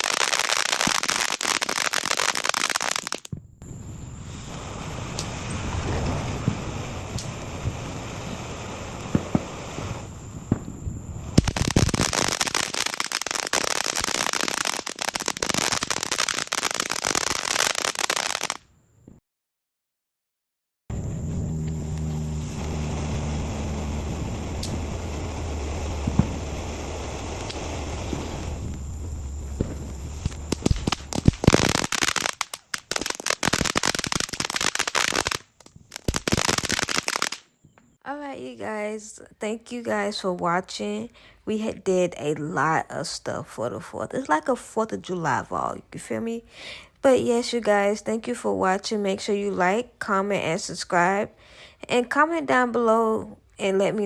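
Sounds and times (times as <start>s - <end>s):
fireworks popping and crackling: 0.0s - 18.6s, 20.9s - 37.5s.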